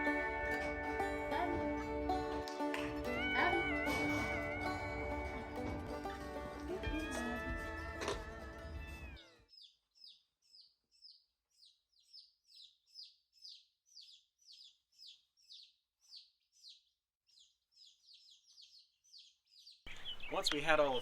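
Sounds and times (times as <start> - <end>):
baby chicks peeping: 5.3 - 21.0.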